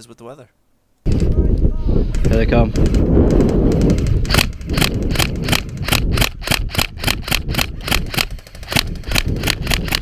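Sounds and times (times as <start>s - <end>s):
wind buffeting microphone: 1.0s - 10.0s
airsoft gun firing rapid shots: 2.8s - 10.0s.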